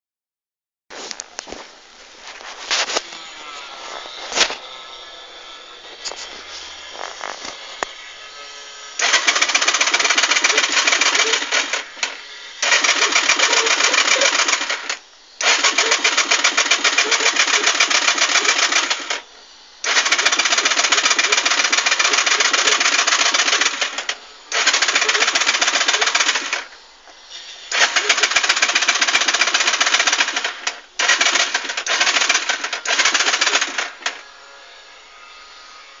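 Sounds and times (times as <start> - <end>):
car starter cranking: 9.0 - 19.2, 19.8 - 26.7, 27.7 - 34.2.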